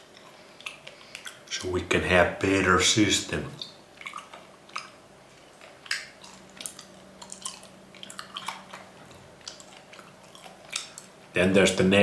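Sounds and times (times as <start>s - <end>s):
wet chewing of meat: 0.0s - 1.8s, 3.5s - 11.4s.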